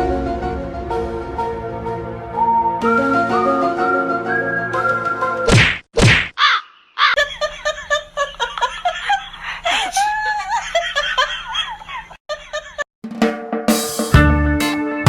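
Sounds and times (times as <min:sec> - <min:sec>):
people giggling: 0:07.0 - 0:12.9.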